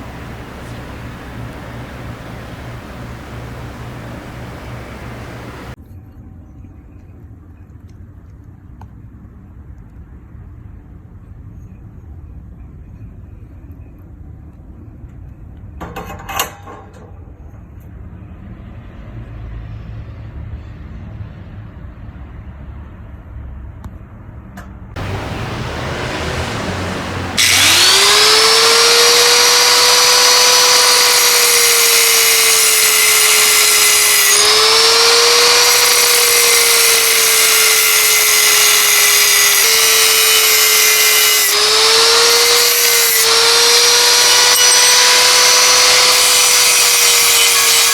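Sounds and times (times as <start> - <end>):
electric power tool whining: 0.0 - 5.8, 25.0 - 47.9
handling noise: 0.0 - 5.8.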